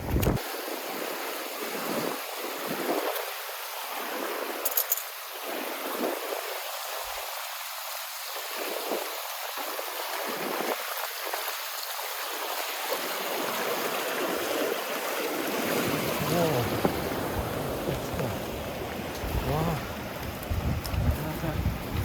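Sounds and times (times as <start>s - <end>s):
stream water running: 0.0s - 22.0s
low voice: 15.8s - 17.0s, 17.6s - 18.6s, 19.3s - 19.9s, 21.0s - 21.8s.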